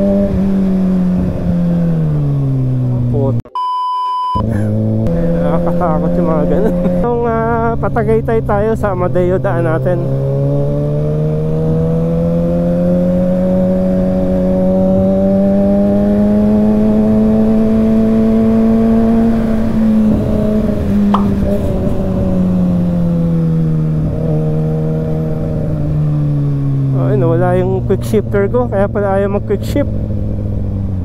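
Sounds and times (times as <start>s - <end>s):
motorcycle engine revving: 0.0s - 3.4s, 4.4s - 31.0s
brief high tone: 3.5s - 4.4s
wind rush: 19.6s - 22.8s.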